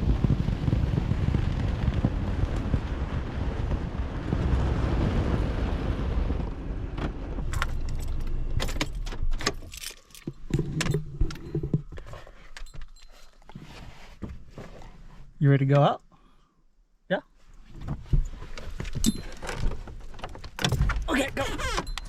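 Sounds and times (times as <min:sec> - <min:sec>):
low road rumble: 0:00.0 - 0:22.0
keys jangling and clicking: 0:07.5 - 0:13.6, 0:19.0 - 0:19.6, 0:20.7 - 0:22.0.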